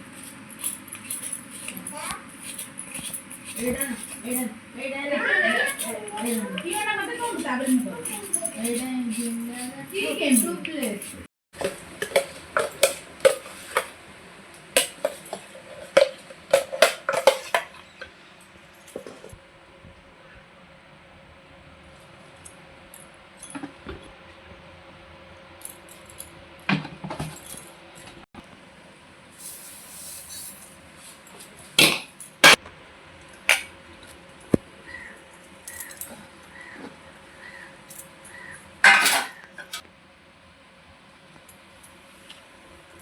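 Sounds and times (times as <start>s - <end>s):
utensils and plates clinking: 0.0s - 4.5s, 5.3s - 14.0s, 14.8s - 18.1s, 37.9s - 39.8s.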